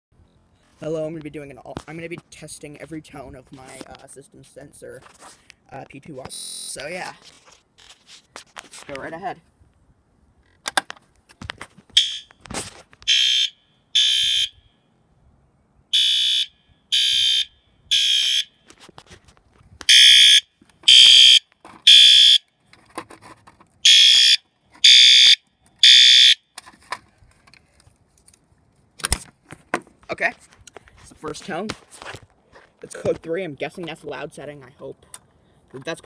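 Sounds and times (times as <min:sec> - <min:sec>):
fire alarm horn blasts: 0:12.0 - 0:12.3, 0:13.1 - 0:14.7, 0:15.9 - 0:18.6, 0:19.9 - 0:22.4, 0:23.8 - 0:26.4.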